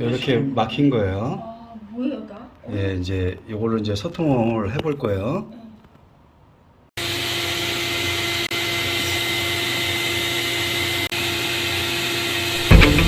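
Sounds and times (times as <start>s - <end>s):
drain-clearing machine humming: 12.4s - 13.0s.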